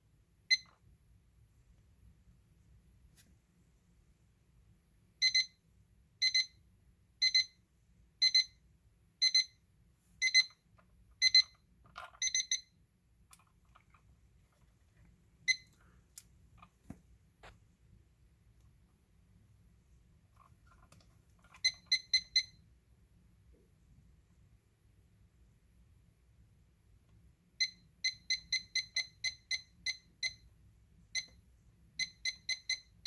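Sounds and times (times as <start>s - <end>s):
alarm clock high beeps: 0.5s - 0.8s, 5.2s - 6.6s, 7.2s - 12.8s, 15.5s - 15.7s, 21.5s - 22.7s, 27.6s - 33.0s.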